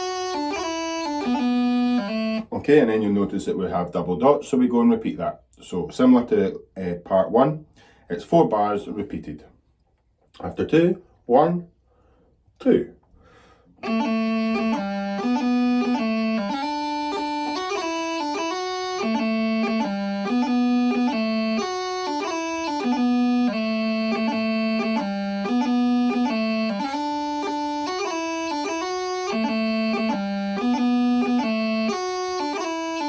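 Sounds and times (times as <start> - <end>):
bagpipe chanter playing tune: 0.0 - 2.6, 13.8 - 33.0.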